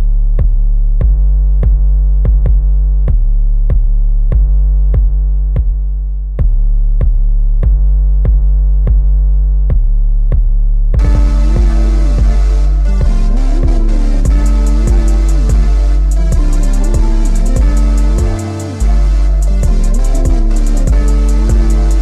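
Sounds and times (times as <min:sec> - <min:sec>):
instrumental hip-hop beat: 0:11.0 - 0:22.0
long held electronic bass note: 0:11.0 - 0:22.0
sharp drum-machine clicks: 0:13.6 - 0:22.0.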